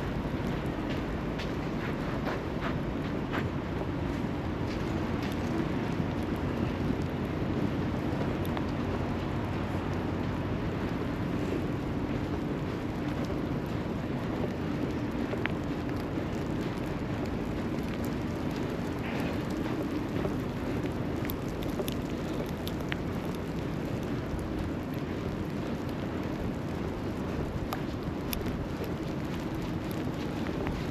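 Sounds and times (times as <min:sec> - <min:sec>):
low hum of traffic: 0:00.0 - 0:30.9
faint ticks: 0:09.8 - 0:30.9.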